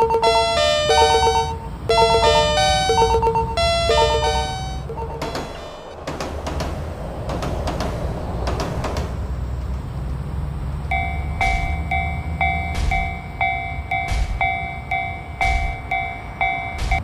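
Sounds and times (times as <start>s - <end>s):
level-crossing bell ringing: 0.0s - 5.9s, 10.9s - 17.0s
low rumble of passing train: 0.0s - 17.0s
loud train wheel clacks: 5.2s - 9.3s.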